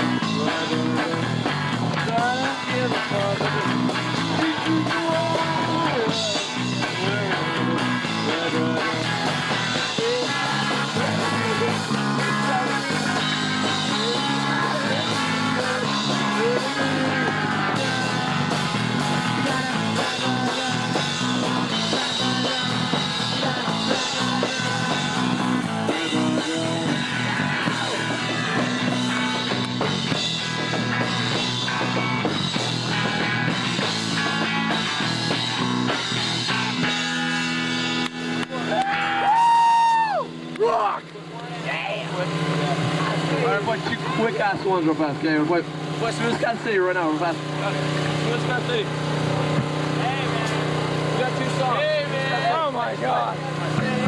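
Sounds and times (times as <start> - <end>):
punk rock band playing: 0.0 - 54.0
shouted vocals: 38.5 - 41.0.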